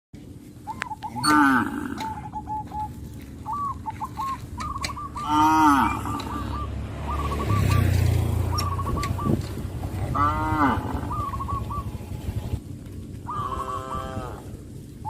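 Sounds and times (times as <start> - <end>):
birds chirping: 0.2 - 15.0
cows mooing: 1.2 - 2.3, 5.2 - 6.8, 9.8 - 11.6, 13.3 - 14.8.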